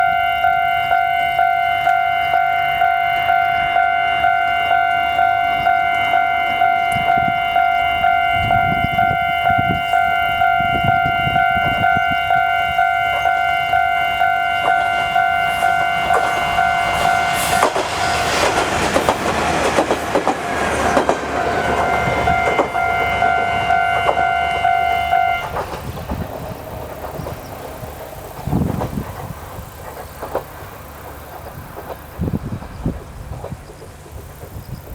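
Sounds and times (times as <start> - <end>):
level-crossing bell ringing: 0.0 - 18.2, 20.6 - 25.5
diesel railcar engine: 0.0 - 34.9
wheels clicking over rail joints: 0.0 - 34.9.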